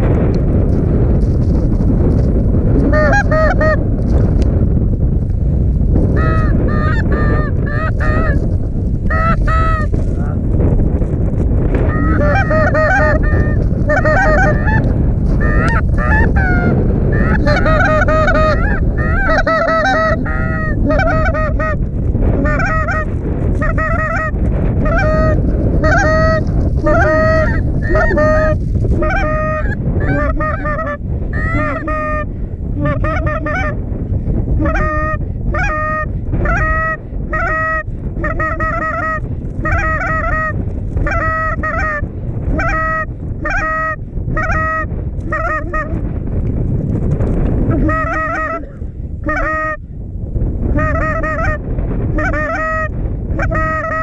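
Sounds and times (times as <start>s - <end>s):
wind on microphone: 0.0s - 54.0s
geese honking: 2.8s - 3.8s, 6.1s - 10.2s, 11.8s - 33.8s, 34.6s - 46.0s, 47.7s - 49.8s, 50.8s - 54.0s.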